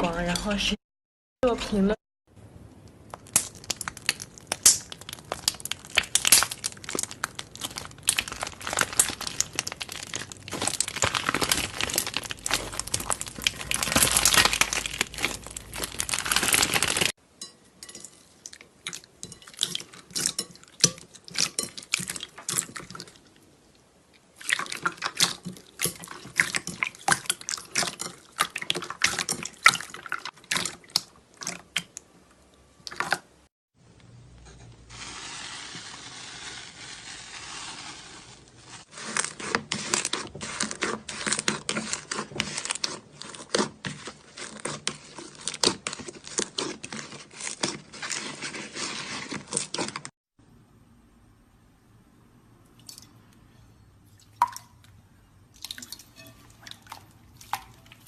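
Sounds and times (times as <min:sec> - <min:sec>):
slime squeezed crackling: 0:03.0 - 0:17.2.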